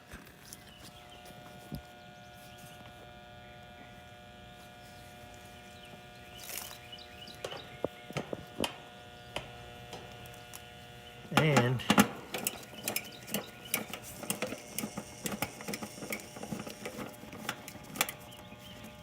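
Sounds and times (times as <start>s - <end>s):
electrical hum: 0.0s - 19.0s
sharp clicks and knocks: 6.5s - 10.6s, 11.3s - 18.5s.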